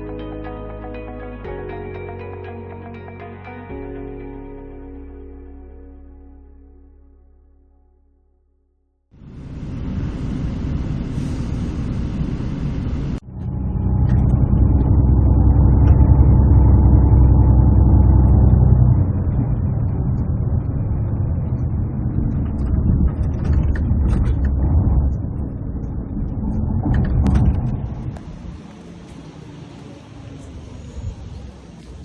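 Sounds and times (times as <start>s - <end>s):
vehicle engine and road noise: 9.1s - 32.0s.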